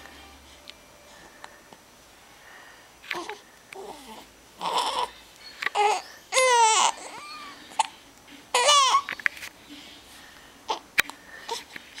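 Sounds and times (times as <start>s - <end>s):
baby crying: 3.2s - 5.1s, 5.7s - 7.9s, 8.5s - 9.1s
baby squeaks and grunts: 5.7s - 7.9s, 8.5s - 9.1s.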